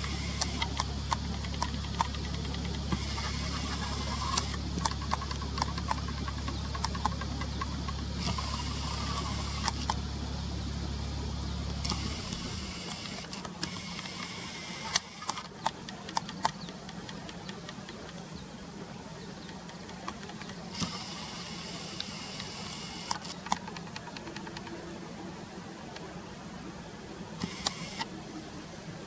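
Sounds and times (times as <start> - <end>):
sharp clicks: 0.0 - 10.0, 11.8 - 18.4, 19.4 - 24.8, 27.4 - 28.1
background hiss: 0.0 - 29.0
low engine-like hum: 0.0 - 29.0.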